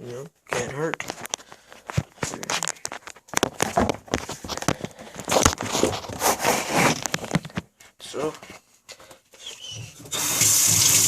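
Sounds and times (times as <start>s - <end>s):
plastic crinkling and rustling: 0.6s - 8.6s.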